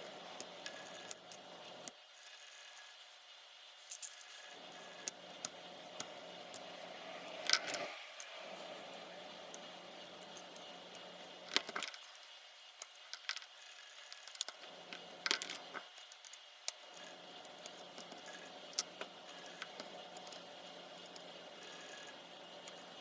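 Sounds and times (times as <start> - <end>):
faint steady hum: 0.0 - 23.0
small tools clicking and tapping: 3.8 - 8.8, 9.5 - 22.9.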